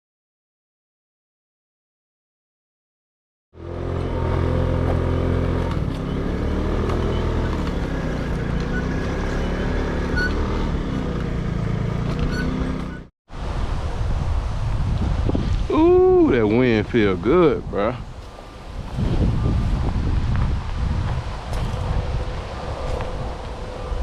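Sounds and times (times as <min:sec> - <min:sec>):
vehicle engine humming: 0:03.6 - 0:13.1.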